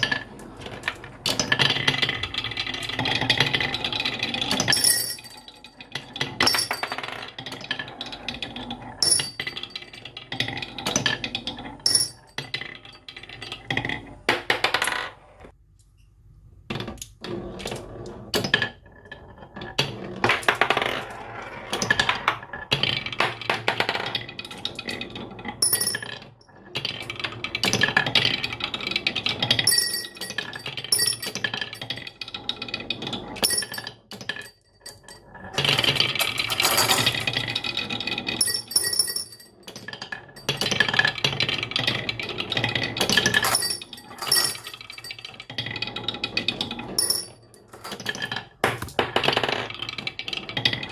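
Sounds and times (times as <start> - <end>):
marbles rolling and clattering: 18.4 - 50.9.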